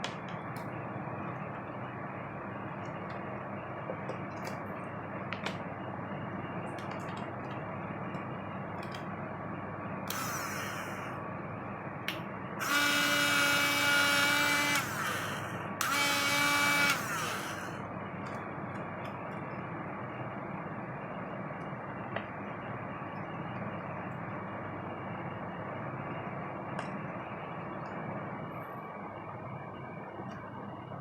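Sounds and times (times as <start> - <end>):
electric drill whine: 10.1 - 11.2, 12.6 - 17.8.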